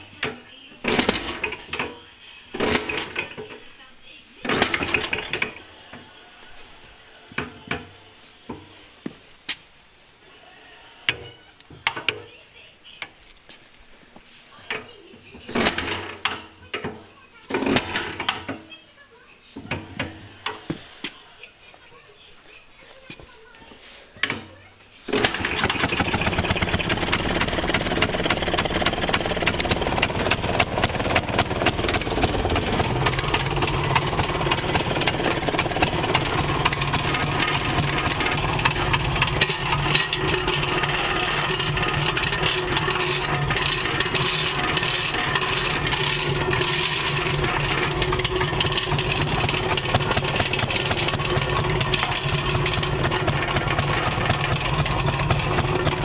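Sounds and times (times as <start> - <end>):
small two-stroke engine running: 0.0 - 3.7, 4.4 - 5.8, 25.1 - 56.0.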